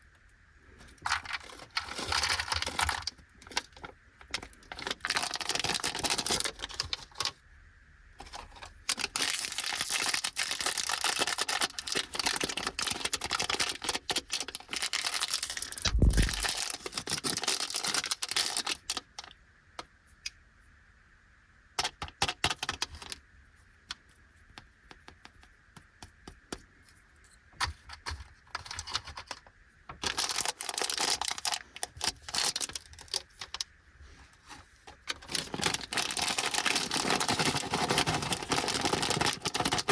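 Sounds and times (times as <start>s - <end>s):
plastic wrapper crinkling: 0.9s - 7.4s, 8.2s - 19.3s, 29.2s - 33.7s, 34.5s - 39.9s.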